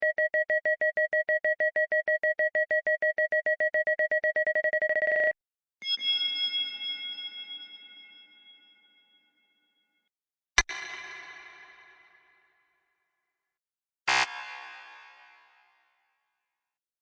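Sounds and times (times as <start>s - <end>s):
two-tone electronic beeps: 0.0s - 5.4s.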